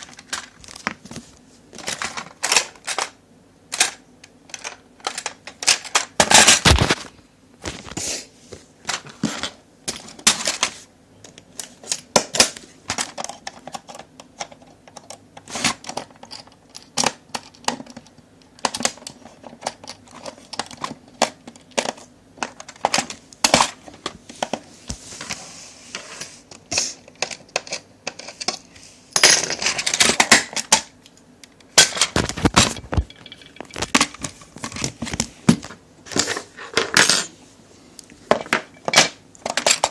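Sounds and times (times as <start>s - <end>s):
packaging rustling: 6.3s - 8.0s, 32.0s - 35.8s.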